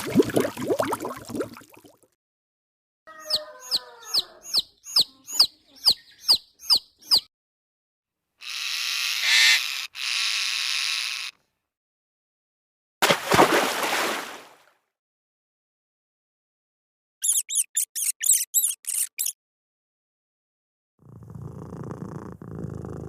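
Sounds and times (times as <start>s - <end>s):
bird chirping: 3.1s - 7.3s, 17.2s - 19.4s.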